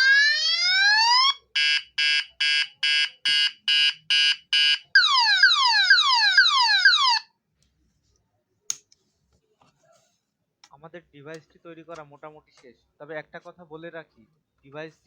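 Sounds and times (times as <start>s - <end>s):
multi-tone alarm siren: 0.0s - 7.3s.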